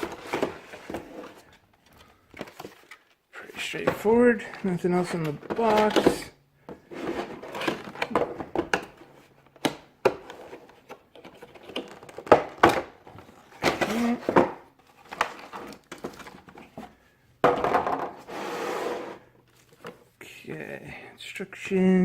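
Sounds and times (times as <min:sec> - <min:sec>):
cardboard and plastic clicks and knocks: 0:00.0 - 0:03.2, 0:05.2 - 0:18.2
packaging rustling: 0:00.0 - 0:03.2.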